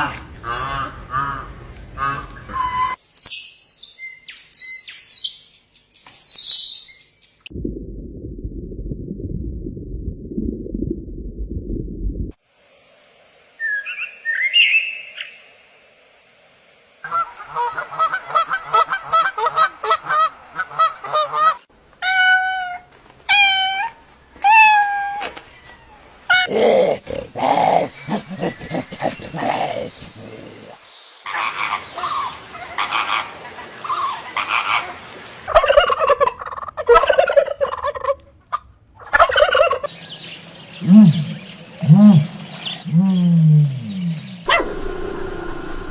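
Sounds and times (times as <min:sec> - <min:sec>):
low rumbling noise: 0:07.5 - 0:12.4, 0:40.4 - 0:45.9
domestic fowl calling: 0:17.0 - 0:22.8, 0:31.3 - 0:39.9.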